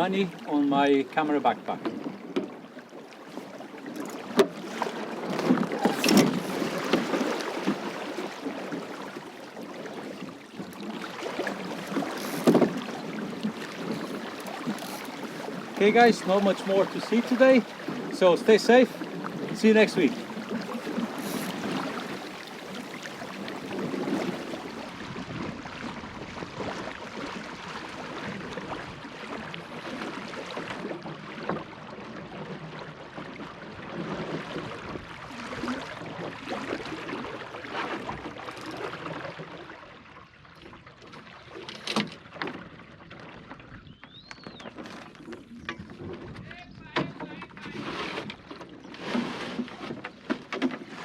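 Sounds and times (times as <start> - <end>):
water sloshing along boat hull: 0.0 - 51.0
knock on wooden boat: 12.4 - 12.8, 45.6 - 47.8.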